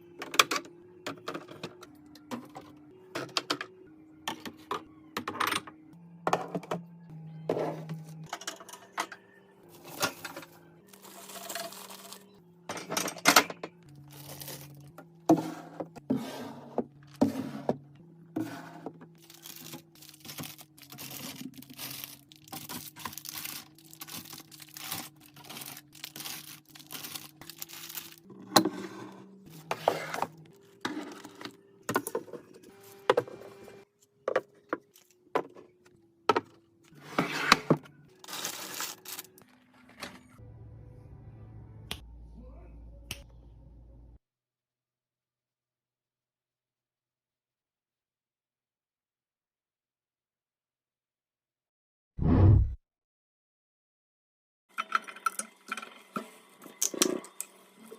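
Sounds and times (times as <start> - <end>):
items knocking and clinking: 9.9 - 15.9
packaging crinkling and tearing: 10.9 - 12.2, 14.0 - 14.9, 19.2 - 28.2, 38.2 - 39.7.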